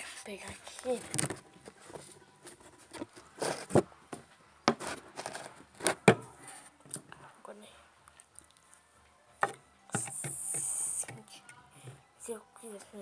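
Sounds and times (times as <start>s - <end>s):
small objects knocking and rustling: 0.4s - 7.2s.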